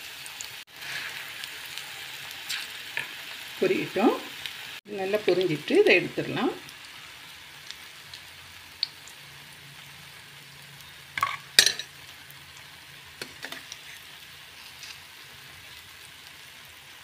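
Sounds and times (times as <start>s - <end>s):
food deep-frying in hot oil: 0.0s - 17.0s
utensil clinking against pan: 11.2s - 11.9s.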